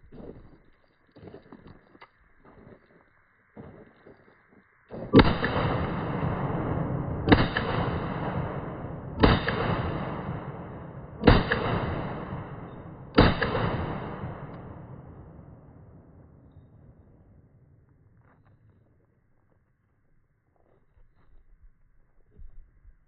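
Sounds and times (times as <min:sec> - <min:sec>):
rifle shots with echo: 0:05.1 - 0:17.2.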